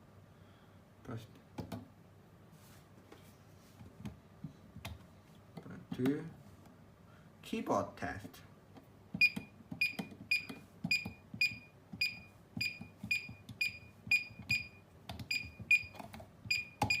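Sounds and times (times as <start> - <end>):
short high electronic beeps: 16.5 - 17.0.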